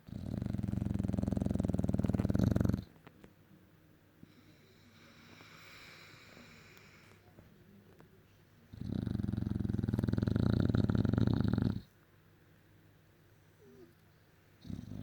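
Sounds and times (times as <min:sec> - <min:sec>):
dog snoring: 0:00.0 - 0:03.0, 0:08.7 - 0:11.9, 0:14.6 - 0:15.0.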